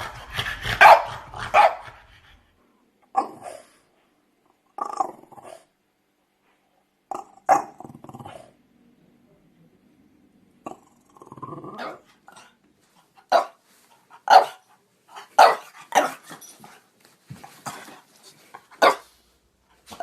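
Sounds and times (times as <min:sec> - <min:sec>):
dog barking: 0:00.0 - 0:02.0, 0:13.3 - 0:13.6, 0:14.2 - 0:14.6, 0:15.2 - 0:16.3, 0:18.8 - 0:19.1
low dog growl: 0:07.1 - 0:08.6, 0:10.6 - 0:12.6.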